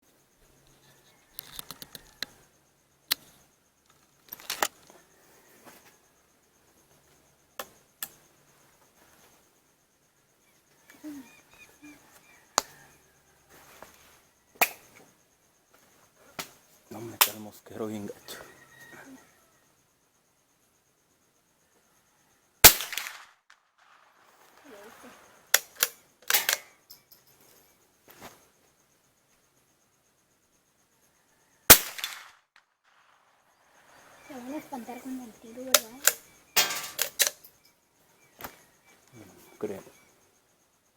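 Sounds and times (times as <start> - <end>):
rifle shot: 22.6 - 23.3, 31.7 - 32.4
rifle bolt clicks and clacks: 25.6 - 26.8, 36.0 - 37.4.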